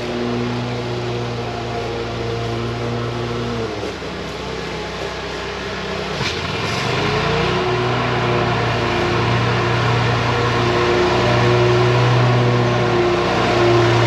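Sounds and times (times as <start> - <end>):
small gasoline engine running: 0.0 - 14.0.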